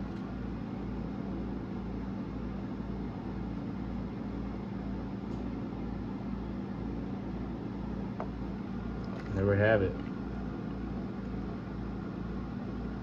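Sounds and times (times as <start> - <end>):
machine hum with low throb: 0.0 - 13.0.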